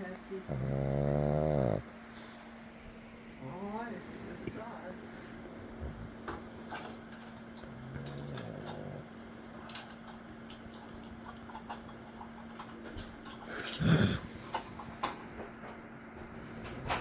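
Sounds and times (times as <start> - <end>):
steady low hum: 0.0 - 17.0
pug snorting: 0.4 - 2.5, 4.1 - 7.0, 7.6 - 9.8, 13.4 - 15.4.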